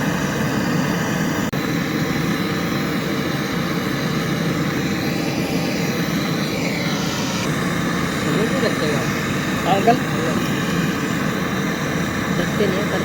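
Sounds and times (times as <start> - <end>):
faint steady whine: 0.0 - 13.0
machine droning: 0.0 - 13.0.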